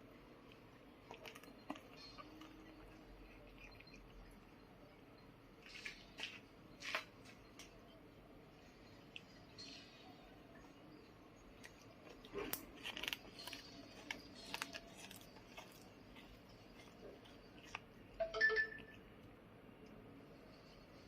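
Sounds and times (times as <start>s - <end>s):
pet crunching lettuce: 0.0s - 4.9s, 11.4s - 18.2s.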